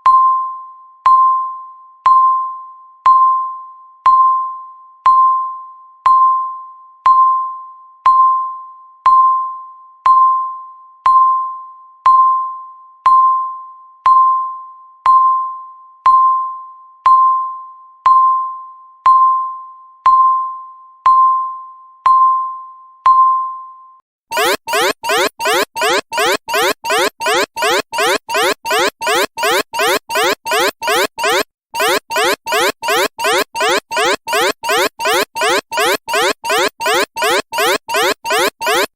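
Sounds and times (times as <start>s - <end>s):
alarm with rising sweeps: 24.3s - 38.9s
electronic timer ping: 24.3s - 38.9s.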